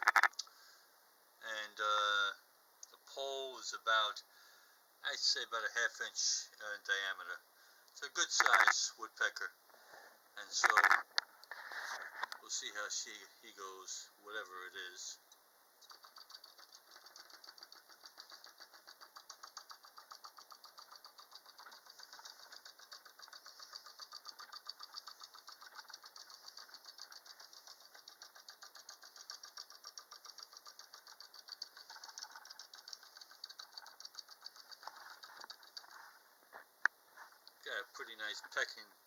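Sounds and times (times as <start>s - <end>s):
wooden toy beak tapping pole: 15.8s - 35.8s.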